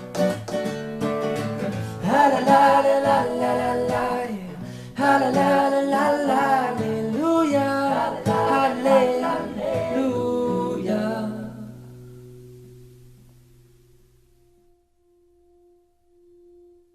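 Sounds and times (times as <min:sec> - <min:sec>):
guitar: 0:00.0 - 0:16.9
man singing: 0:02.0 - 0:11.9.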